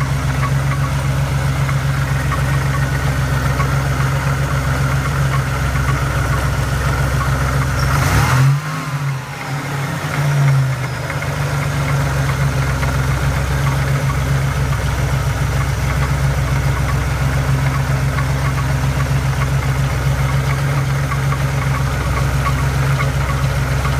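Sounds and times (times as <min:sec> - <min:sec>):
car engine idling: 0:00.0 - 0:23.9
engine knocking: 0:00.0 - 0:23.9.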